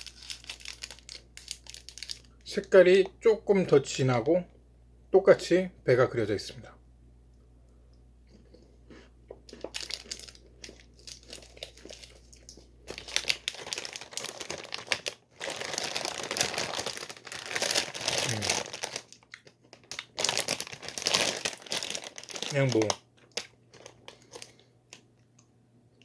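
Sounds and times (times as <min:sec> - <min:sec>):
plastic wrapper crinkling: 0:00.0 - 0:03.1, 0:09.5 - 0:25.1.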